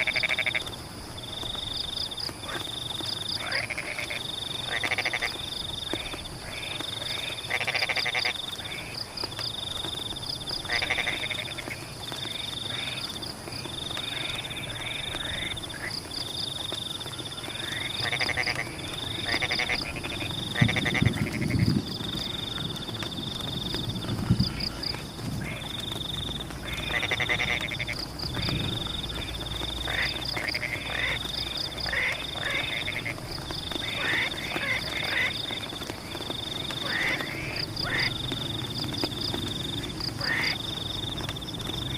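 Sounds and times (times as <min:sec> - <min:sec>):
frogs croaking: 0:00.0 - 0:41.9
rain hiss: 0:00.0 - 0:41.9.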